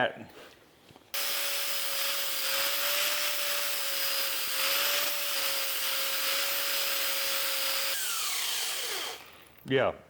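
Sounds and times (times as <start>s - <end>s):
electric grinder grinding metal: 1.2s - 9.5s.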